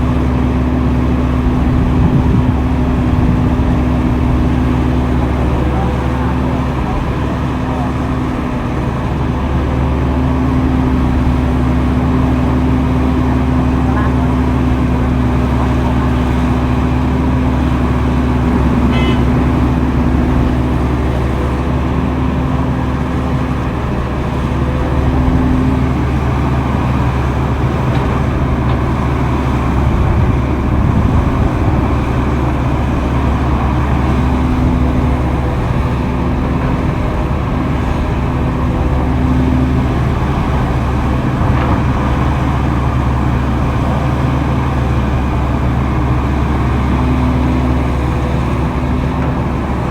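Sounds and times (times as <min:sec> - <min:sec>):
heavy machinery diesel engines droning: 0:00.0 - 0:49.9
higher steady hum: 0:15.2 - 0:39.2.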